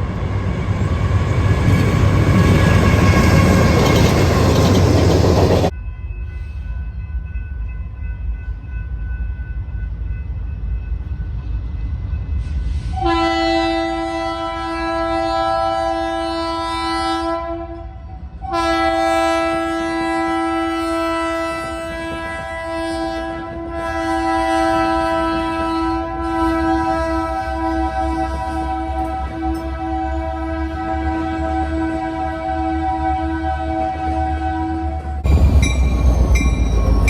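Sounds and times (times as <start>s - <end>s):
train rumble: 0.0s - 37.0s
locomotive air horn blasts: 12.8s - 35.4s.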